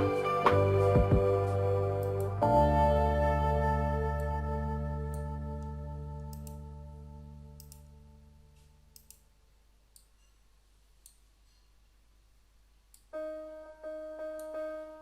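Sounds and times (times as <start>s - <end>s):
keyboard tune of repeated notes: 0.0s - 7.9s, 13.2s - 15.0s
held music chord: 0.0s - 8.2s
faint clicks: 7.6s - 7.9s, 8.5s - 9.3s, 9.9s - 10.4s.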